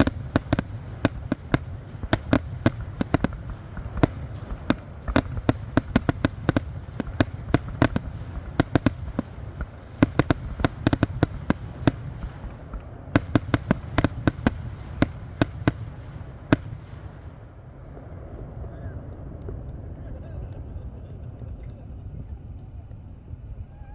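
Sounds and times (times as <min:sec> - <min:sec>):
fireworks cracking: 0:00.0 - 0:23.5
low rumble: 0:14.6 - 0:23.9.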